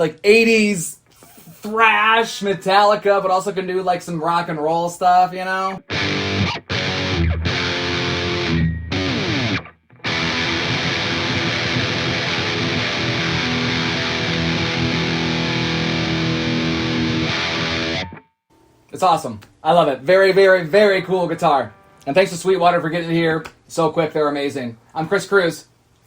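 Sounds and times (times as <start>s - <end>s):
distorted electric guitar chords: 5.8s - 18.2s, 21.2s - 22.1s.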